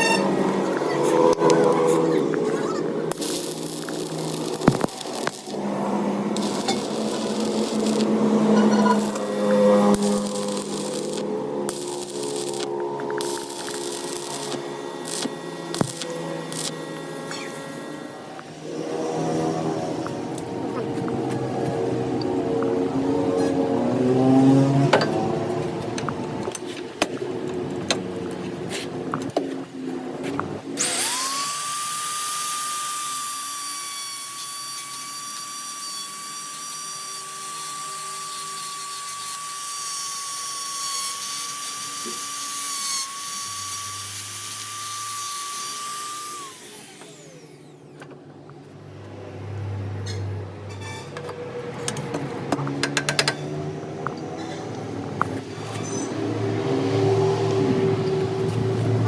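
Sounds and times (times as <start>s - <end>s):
small electric motor whine: 0.0s - 21.2s, 30.8s - 48.1s
clicks and knocks: 51.1s - 53.5s.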